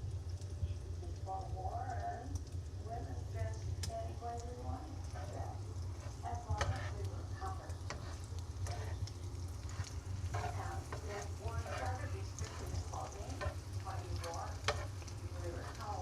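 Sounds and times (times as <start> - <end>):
food frying in a pan: 0.0 - 16.0
steady low hum: 0.0 - 16.0
utensil clicking against pan: 3.8 - 16.0.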